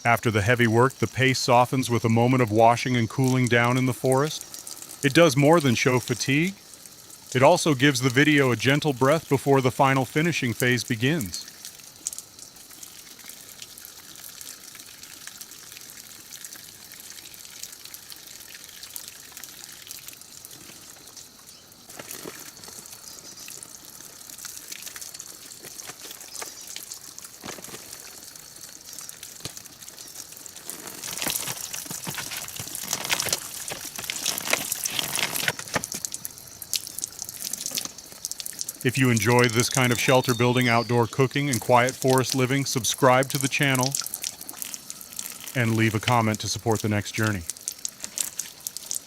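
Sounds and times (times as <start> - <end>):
water trickling and splashing: 0.0 - 49.0.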